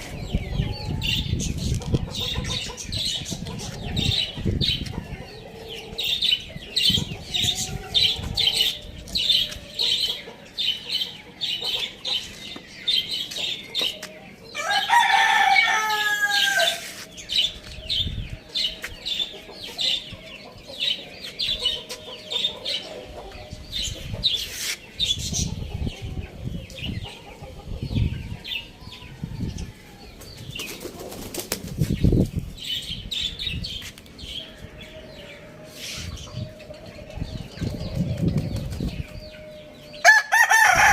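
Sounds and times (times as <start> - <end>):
small birds chirping: 0.0 - 40.1
rooster crowing: 14.6 - 16.8, 40.0 - 40.9.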